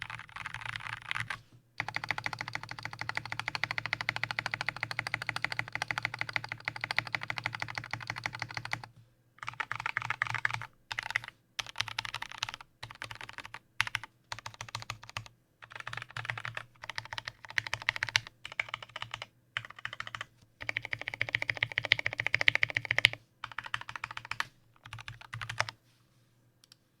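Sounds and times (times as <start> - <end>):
typing on mechanical keyboard: 0.0 - 25.8.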